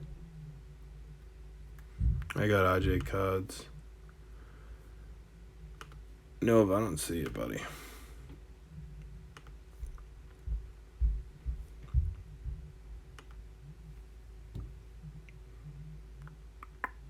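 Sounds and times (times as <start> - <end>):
dull low thumps: 1.9 - 3.1, 9.8 - 16.0
keyboard and mouse clicks: 5.8 - 6.0, 13.2 - 13.4.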